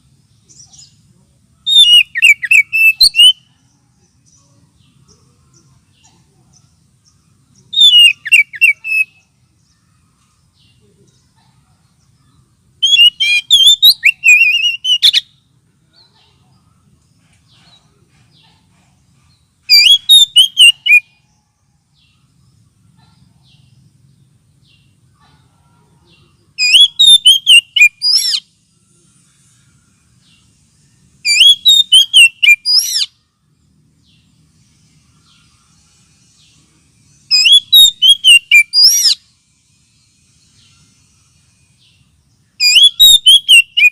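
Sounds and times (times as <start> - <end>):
bird song whistles and chirps: 1.6 - 11.3, 12.0 - 15.4, 19.4 - 23.9, 26.1 - 28.6, 29.6 - 33.2, 34.9 - 39.2, 40.3 - 43.9.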